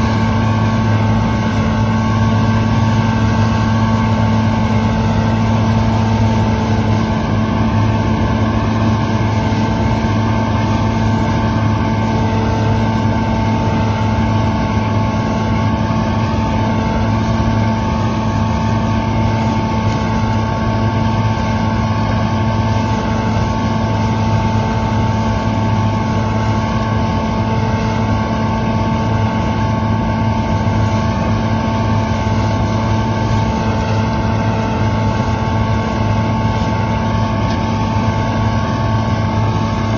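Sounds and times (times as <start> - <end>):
combine harvester engine drone: 0.0 - 39.9.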